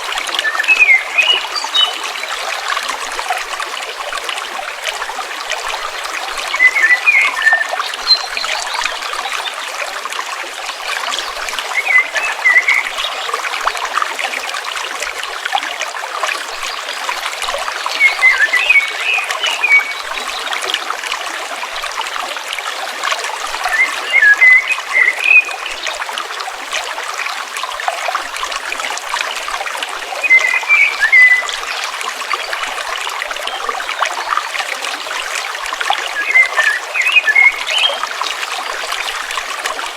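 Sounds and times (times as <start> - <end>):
stream water trickling: 0.0 - 39.9
bird chirping: 0.4 - 2.0, 18.0 - 20.3, 36.2 - 38.0.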